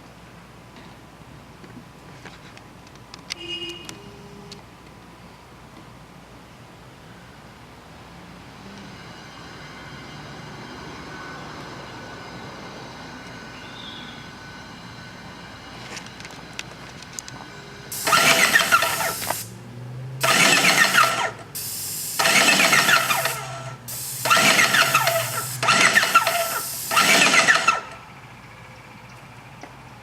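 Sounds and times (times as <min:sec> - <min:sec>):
spray paint can hissing: 0:17.9 - 0:19.5, 0:20.2 - 0:27.8.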